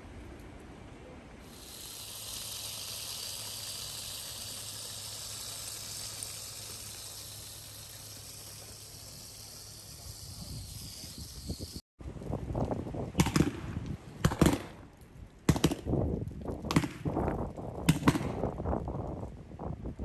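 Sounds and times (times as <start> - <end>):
gusty wind on microphone: 7.1 - 14.9, 15.7 - 20.0.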